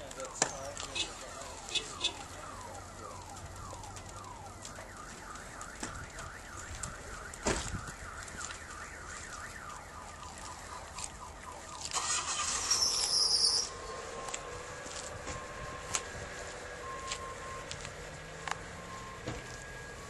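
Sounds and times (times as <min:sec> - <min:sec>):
car alarm warbling: 0:00.0 - 0:17.8
thump: 0:07.4 - 0:07.8, 0:19.2 - 0:19.5
rushing noise with high squeal: 0:12.1 - 0:14.6.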